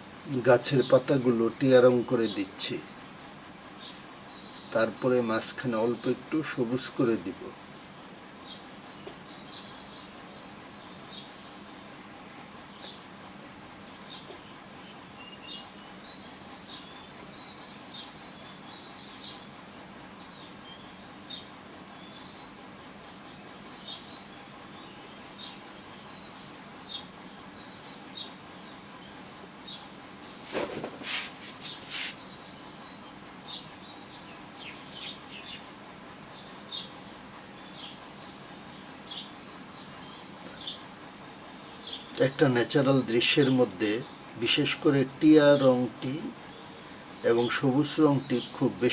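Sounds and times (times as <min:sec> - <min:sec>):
birds chirping: 0:00.0 - 0:48.9
scratchy strokes: 0:30.4 - 0:32.2.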